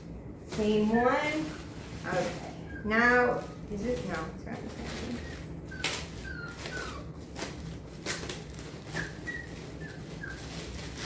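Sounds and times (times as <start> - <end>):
rustling: 0.0 - 11.0
pet animal squeaky calls: 5.1 - 7.2, 8.9 - 10.6.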